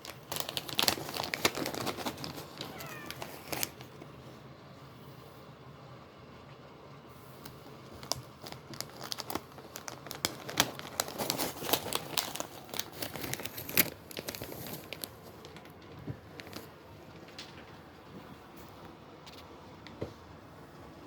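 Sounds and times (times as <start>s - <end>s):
plastic packaging crinkling: 0.0s - 4.2s, 7.4s - 17.6s.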